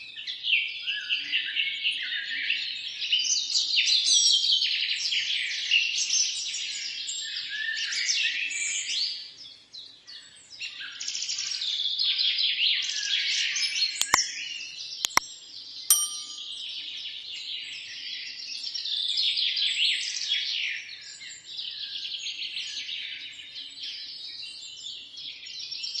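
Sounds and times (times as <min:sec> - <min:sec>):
sharp clicks: 0:14.0 - 0:14.2
brief ringing tone: 0:15.9 - 0:16.5.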